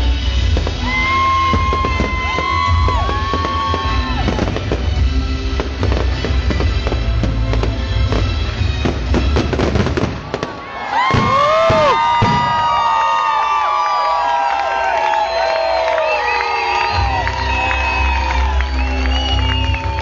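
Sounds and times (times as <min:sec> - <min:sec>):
fireworks banging and crackling: 0:00.2 - 0:13.0.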